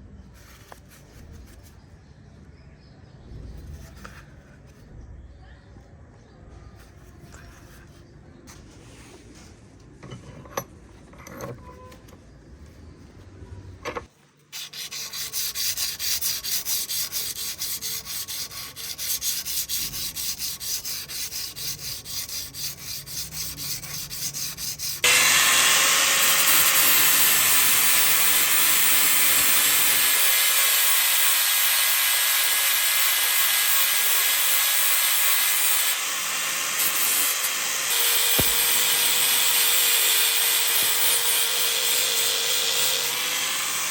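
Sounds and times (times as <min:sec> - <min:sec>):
rhythmic rubbing on steel: 0:14.6 - 0:36.0
power abrasive tool hissing: 0:14.6 - 0:43.9.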